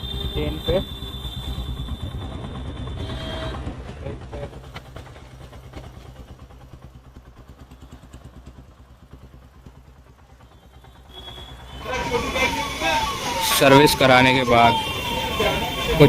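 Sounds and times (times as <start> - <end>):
motorcycle engine rumbling: 0.0 - 16.0.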